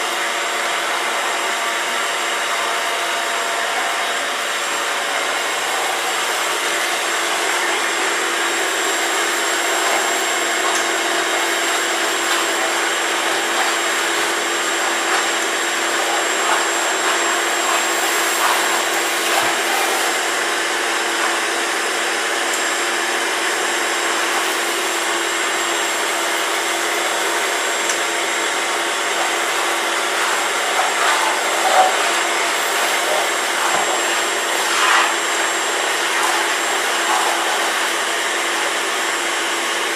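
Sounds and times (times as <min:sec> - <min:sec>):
vacuum cleaner whining: 0:00.0 - 0:39.9.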